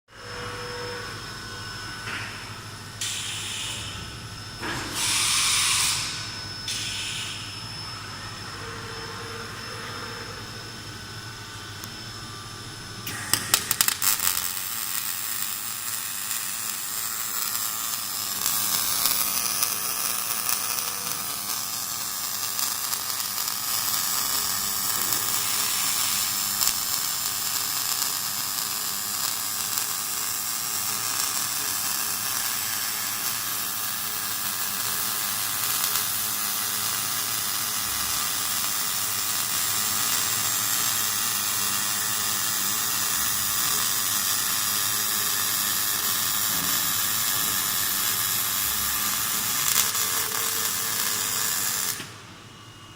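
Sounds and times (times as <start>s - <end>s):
welding arc crackling and sizzling: 0.2s - 52.3s
welding arc cracks: 13.1s - 52.2s.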